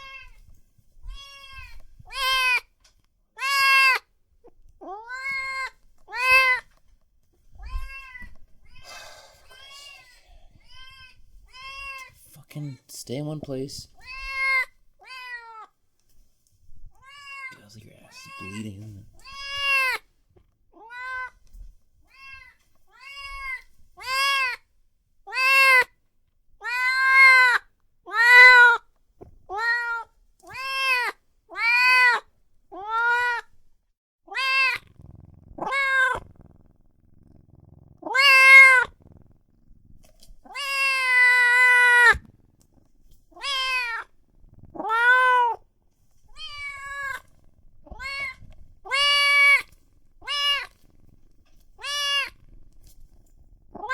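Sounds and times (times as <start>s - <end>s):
kitten mewing: 1.0s - 2.7s, 3.4s - 4.0s, 4.8s - 6.7s, 7.6s - 12.8s, 14.0s - 15.6s, 17.0s - 20.0s, 25.3s - 25.9s, 26.6s - 28.8s, 29.5s - 33.5s, 34.3s - 36.5s, 37.4s - 39.2s, 40.4s - 42.3s, 43.3s - 45.6s, 46.3s - 50.8s, 51.8s - 52.5s.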